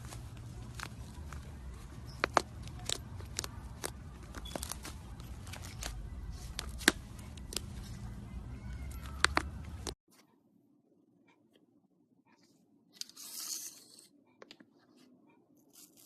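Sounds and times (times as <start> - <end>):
slime crust crackling: 0.0 - 8.2.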